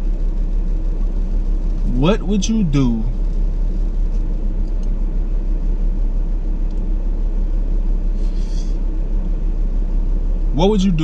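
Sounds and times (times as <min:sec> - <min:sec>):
deep hum: 0:00.0 - 0:11.0
low rumble: 0:00.0 - 0:11.0.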